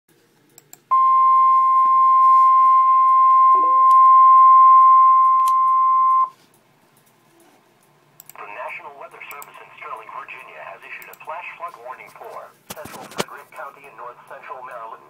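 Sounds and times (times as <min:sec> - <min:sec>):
steady high alarm beep: 0:00.9 - 0:06.4.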